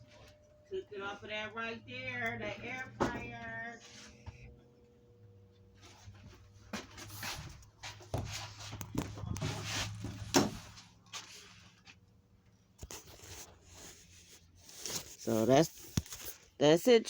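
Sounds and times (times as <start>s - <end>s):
steady low hum: 0.0s - 16.0s
rustling and knocks of handling: 5.8s - 12.1s.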